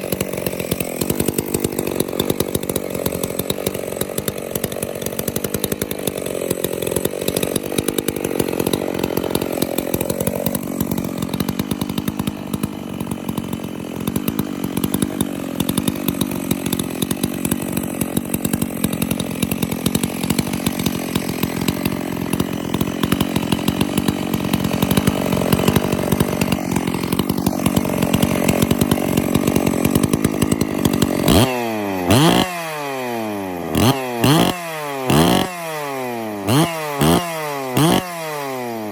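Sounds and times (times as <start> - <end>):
chainsaw engine revving: 0.0 - 38.9.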